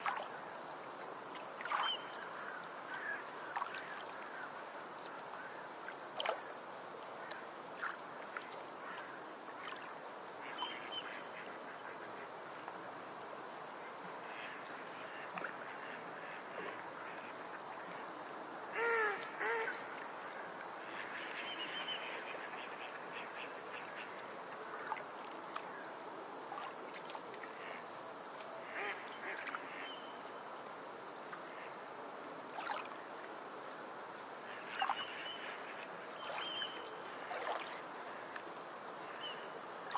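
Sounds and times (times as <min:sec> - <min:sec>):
surf washing: 0:23.1 - 0:39.9.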